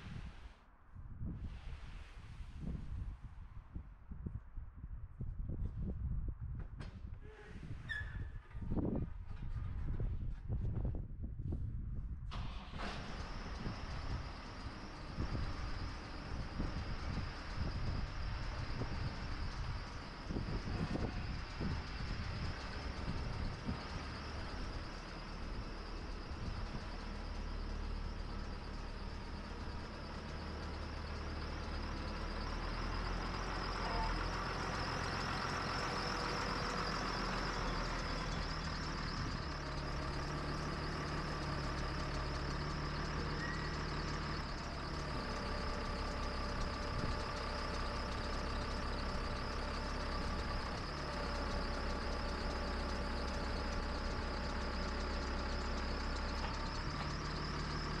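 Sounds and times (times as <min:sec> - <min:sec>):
tractor engine droning: 0:12.3 - 0:58.0.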